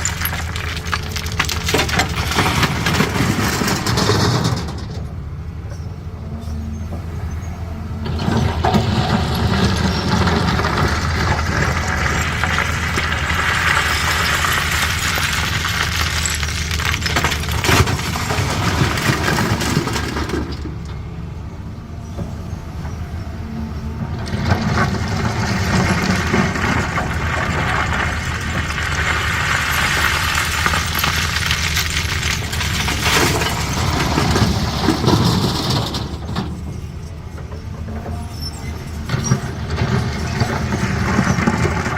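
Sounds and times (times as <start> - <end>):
stone clattering and scraping: 0.0 - 5.0, 8.0 - 20.6, 24.2 - 36.7
diesel engine running: 0.0 - 41.9.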